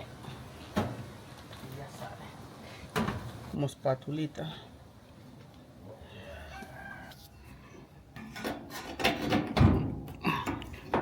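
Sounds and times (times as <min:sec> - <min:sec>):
knocks and scrapes on sheet metal: 0:08.2 - 0:10.1.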